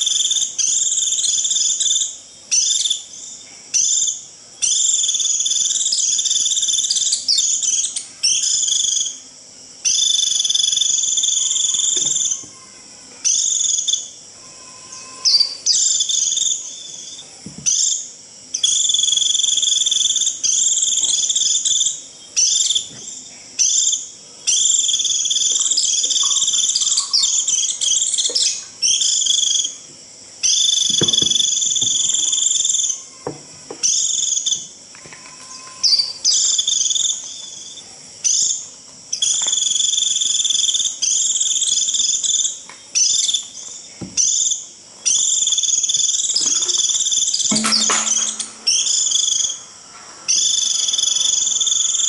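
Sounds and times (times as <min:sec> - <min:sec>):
bird shrill flock call: 0:26.2 - 0:27.8.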